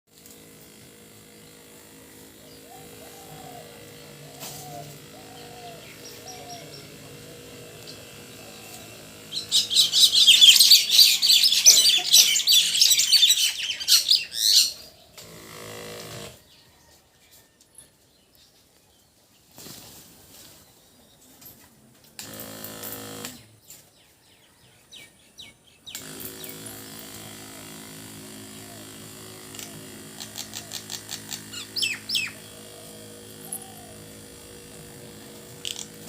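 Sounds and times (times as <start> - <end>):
loud rapid high chirping: 5.2 - 14.8, 29.8 - 34.6.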